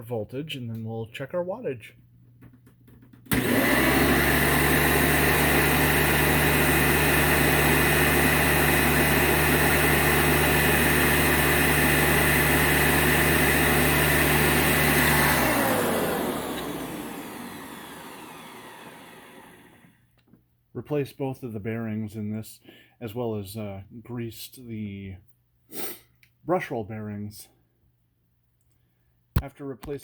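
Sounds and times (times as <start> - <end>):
vacuum cleaner running: 3.3 - 20.0
vacuum motor winding down: 3.3 - 20.0.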